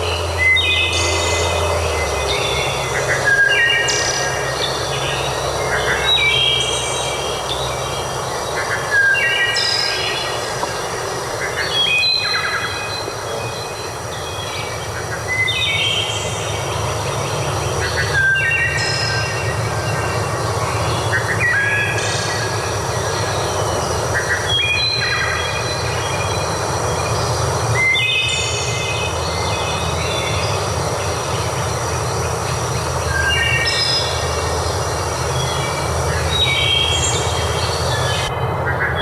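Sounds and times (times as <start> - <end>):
birds whistling: 0.0 - 39.0.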